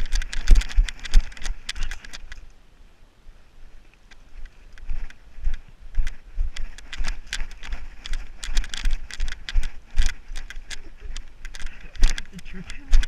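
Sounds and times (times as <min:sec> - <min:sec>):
footsteps: 0:00.0 - 0:02.4, 0:03.6 - 0:13.0
gear rattling: 0:00.0 - 0:02.4, 0:06.0 - 0:13.0.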